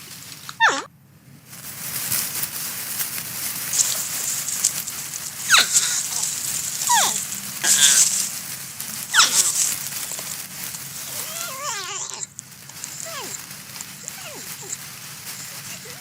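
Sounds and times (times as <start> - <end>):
crackling hiss: 0.0 - 16.0
porcupine crying: 0.5 - 0.9, 3.7 - 8.4, 9.0 - 16.0.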